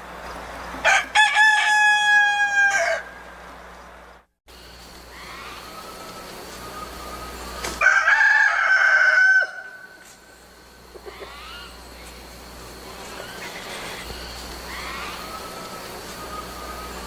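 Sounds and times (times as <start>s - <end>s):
rooster crowing: 0.8s - 3.2s, 7.8s - 10.0s.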